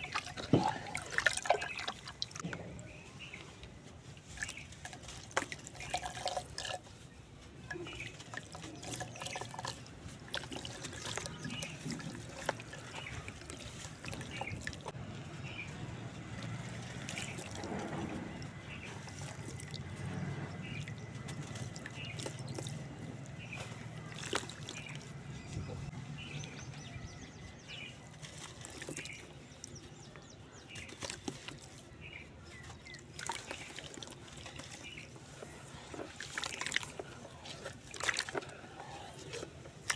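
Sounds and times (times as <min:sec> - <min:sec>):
wet sand trickling: 0:00.0 - 0:39.9
water dripping: 0:07.6 - 0:15.0, 0:16.1 - 0:25.4.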